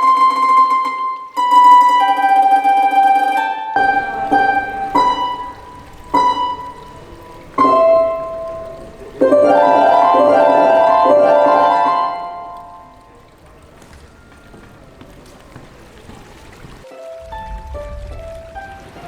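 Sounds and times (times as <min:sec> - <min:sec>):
harp-like plucked notes: 0:00.0 - 0:16.8.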